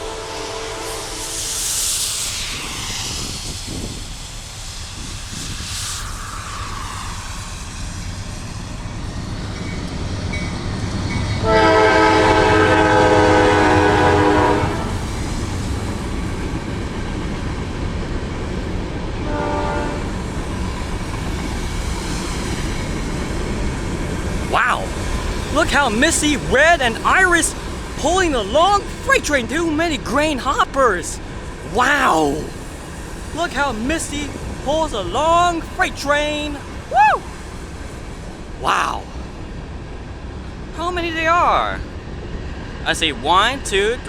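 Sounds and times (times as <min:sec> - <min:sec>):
locomotive horn: 0:00.0 - 0:01.3, 0:11.4 - 0:15.0, 0:19.2 - 0:20.2
diesel locomotive rumble: 0:00.0 - 0:43.4.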